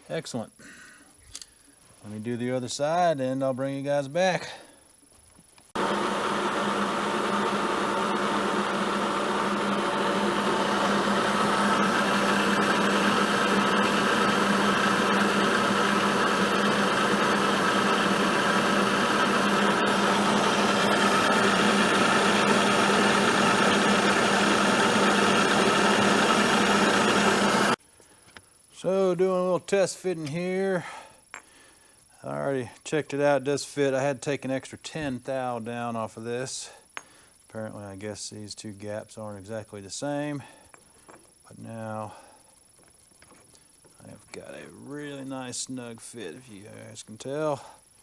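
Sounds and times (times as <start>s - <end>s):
end mill grinding metal: 5.8s - 27.8s
milling machine hum: 5.8s - 27.8s.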